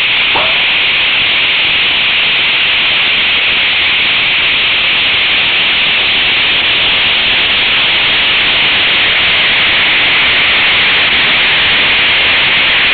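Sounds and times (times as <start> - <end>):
steady loud hiss: 0.0 - 12.9.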